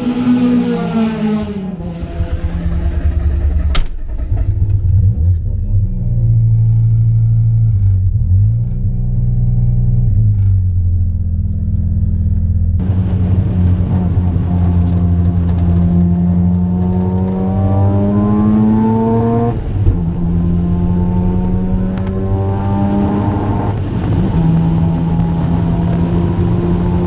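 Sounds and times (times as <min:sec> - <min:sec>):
sharp click: 0:03.7 - 0:04.1.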